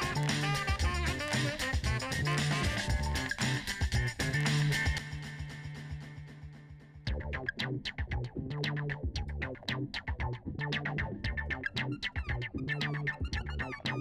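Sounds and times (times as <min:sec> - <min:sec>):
electronic beat music: 0:00.0 - 0:08.3.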